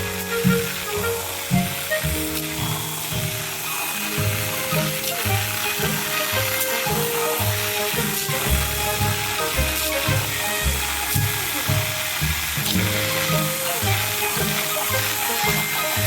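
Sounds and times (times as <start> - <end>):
melody over bass line: 0.0 - 16.0
steady hiss: 0.0 - 16.0.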